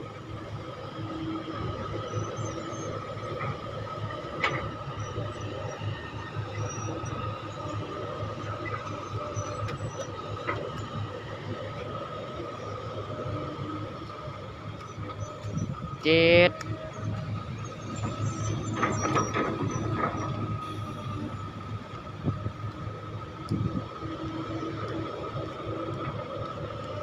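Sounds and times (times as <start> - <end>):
excavator engine rumble and whine: 0.0 - 27.0.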